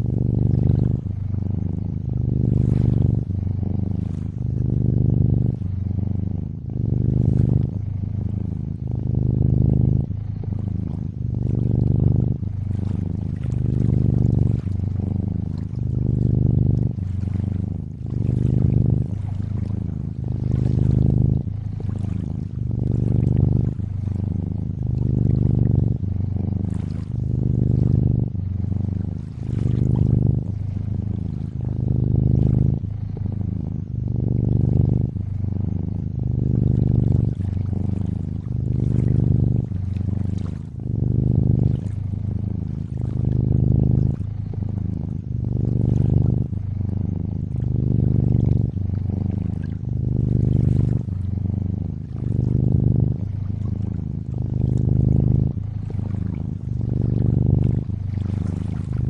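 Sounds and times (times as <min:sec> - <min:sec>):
cat purring: 0:00.0 - 0:59.0
water lapping and trickling: 0:02.0 - 0:03.0, 0:04.0 - 0:04.7, 0:12.2 - 0:25.8, 0:26.6 - 0:28.5, 0:29.1 - 0:32.5, 0:37.0 - 0:41.0, 0:41.7 - 0:44.3, 0:45.1 - 0:46.3, 0:49.3 - 0:51.2, 0:51.9 - 0:59.0.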